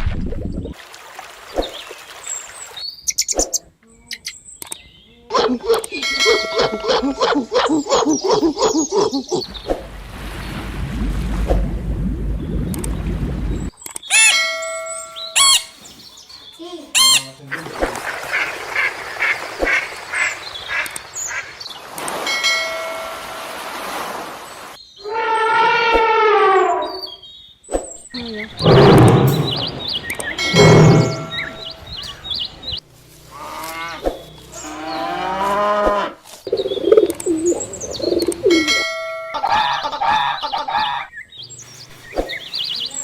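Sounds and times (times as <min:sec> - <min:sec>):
animal calls burst: 0:16.9 - 0:19.8, 0:28.5 - 0:31.7
duck quacking: 0:16.9 - 0:20.8
low warbling animal call: 0:28.2 - 0:32.0
cattle mooing: 0:28.6 - 0:31.6, 0:33.3 - 0:36.2.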